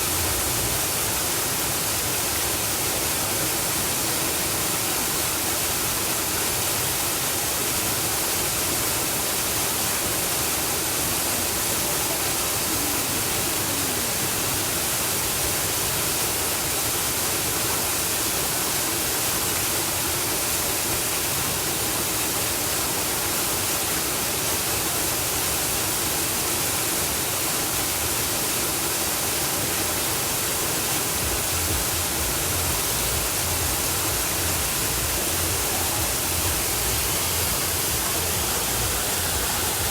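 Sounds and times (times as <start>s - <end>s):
waterfall pouring: 0.0s - 39.9s
low rumble: 31.5s - 39.9s.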